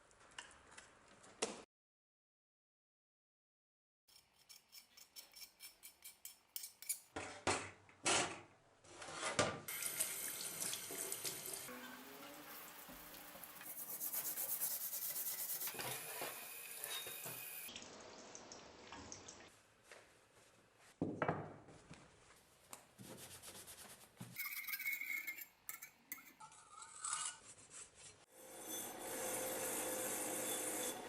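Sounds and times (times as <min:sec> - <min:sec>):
water running from a tap: 0:09.7 - 0:13.9
metal rubbed in water: 0:11.7 - 0:15.8.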